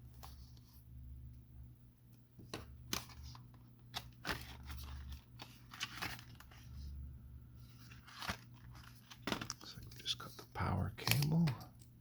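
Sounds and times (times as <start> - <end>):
cardboard packaging crinkling: 2.9 - 6.8, 7.7 - 10.3.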